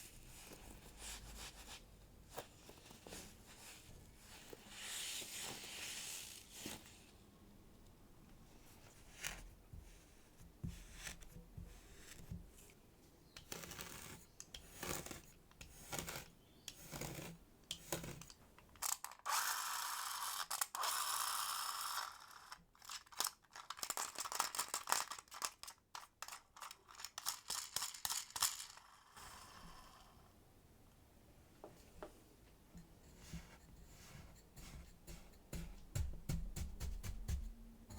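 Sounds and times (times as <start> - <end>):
tools scraping sand: 13.4 - 18.3, 33.1 - 36.1.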